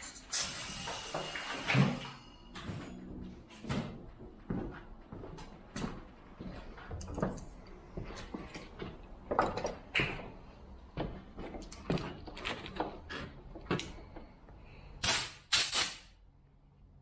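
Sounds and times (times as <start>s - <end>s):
compressed air blasts: 0.3s - 2.0s, 15.0s - 16.2s.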